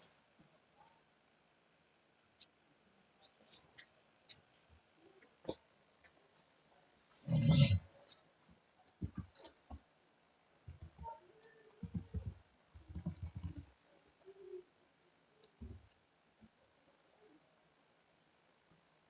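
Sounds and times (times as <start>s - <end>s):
computer mouse and key clicks: 8.9s - 9.8s, 10.7s - 13.7s, 15.4s - 16.0s.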